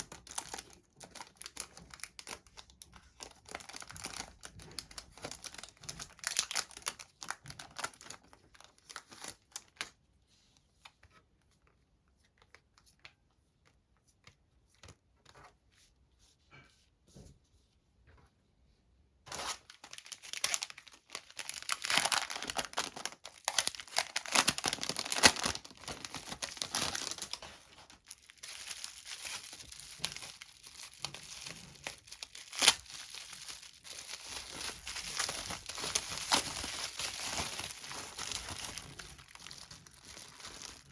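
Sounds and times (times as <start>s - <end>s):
packaging crinkling and tearing: 0.0s - 9.9s, 19.3s - 40.9s.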